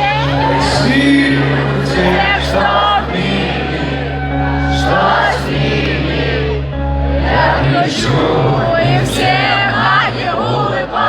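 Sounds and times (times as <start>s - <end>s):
song with singing: 0.0s - 11.0s.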